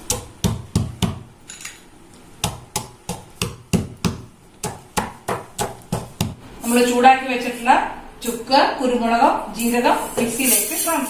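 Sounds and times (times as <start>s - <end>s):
pestle pounding in stone mortar: 0.0s - 1.3s, 2.4s - 6.4s.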